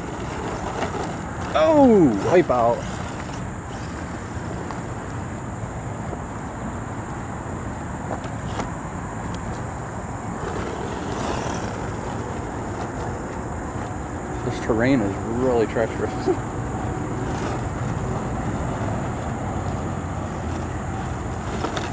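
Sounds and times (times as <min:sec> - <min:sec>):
toy truck driving over rocks: 0:00.0 - 0:06.3, 0:07.9 - 0:21.9.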